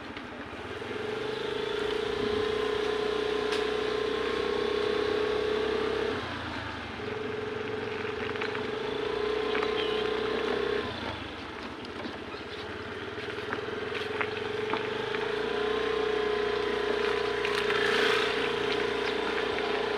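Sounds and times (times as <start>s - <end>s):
motor hum: 6.4s - 19.9s.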